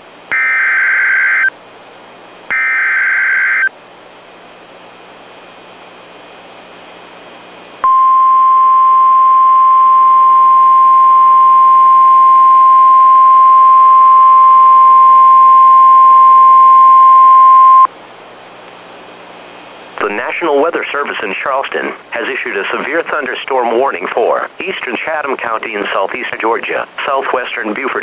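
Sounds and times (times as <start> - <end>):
loud steady alarm beep: 0.3 - 1.5, 2.5 - 3.7, 7.8 - 17.9
faint radio hiss: 18.4 - 28.0.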